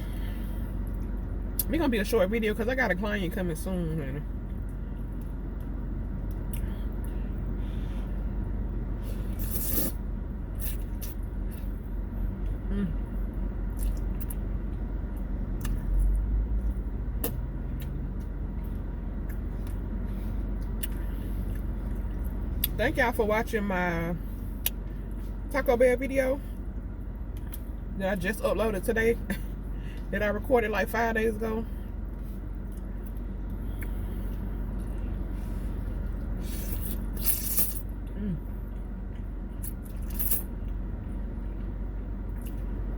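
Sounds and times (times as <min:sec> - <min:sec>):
car idling from inside: 0:00.0 - 0:42.9
low mechanical hum: 0:00.0 - 0:42.9.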